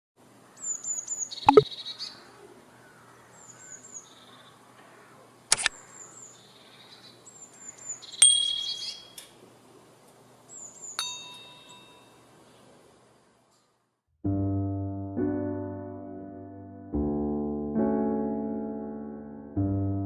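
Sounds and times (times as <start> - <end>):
songbirds chirping: 0.2 - 13.5
sharp clicks: 5.5 - 5.8
ringing ding: 8.2 - 9.0, 11.0 - 12.2.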